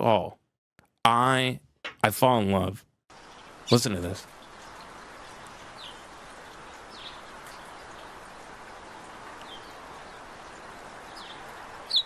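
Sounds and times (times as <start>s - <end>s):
outdoor background hiss: 1.1s - 12.0s
bird chirps: 3.2s - 8.1s, 9.4s - 12.0s.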